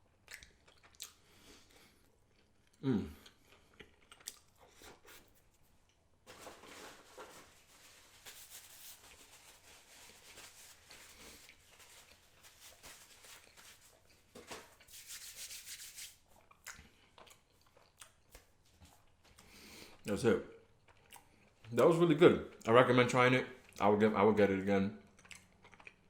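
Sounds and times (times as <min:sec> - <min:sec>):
rubbing and rustling: 0:06.3 - 0:16.4.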